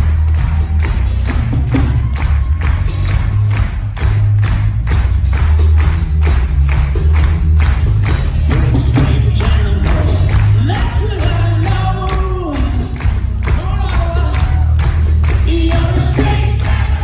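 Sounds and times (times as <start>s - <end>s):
person singing: 8.7s - 17.0s.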